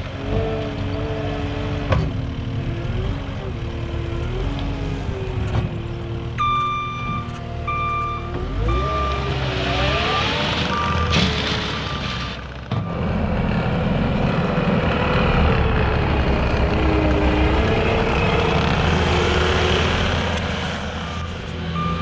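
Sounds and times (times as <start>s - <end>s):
diesel engine revving under load: 0.0s - 22.0s
reversing alarm beeping: 6.4s - 13.1s, 21.0s - 22.0s.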